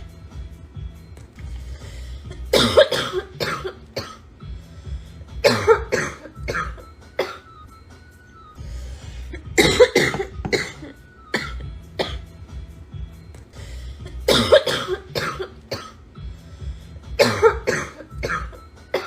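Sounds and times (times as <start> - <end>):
faint music: 0.0 - 19.0
girl coughing harshly: 2.3 - 4.3, 5.4 - 7.5, 9.5 - 12.2, 14.0 - 16.0, 17.2 - 19.0.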